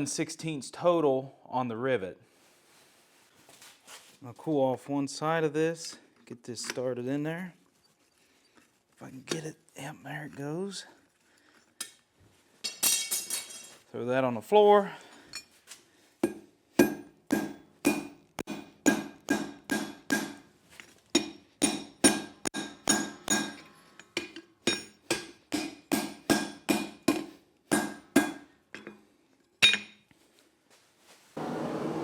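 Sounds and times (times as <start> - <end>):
hammer ringing on anvil: 21.2 - 23.6.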